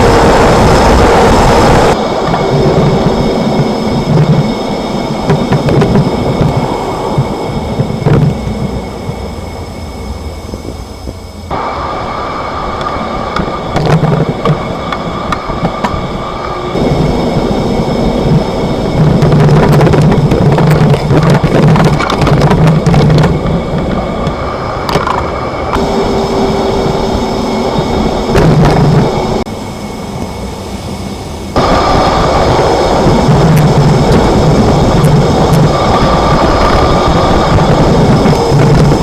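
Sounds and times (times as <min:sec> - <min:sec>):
road and drivetrain rumble: 0:00.0 - 0:39.0.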